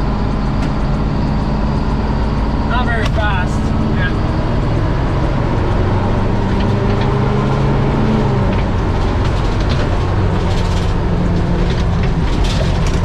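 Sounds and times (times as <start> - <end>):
fire truck engine under load: 0.0 - 13.0.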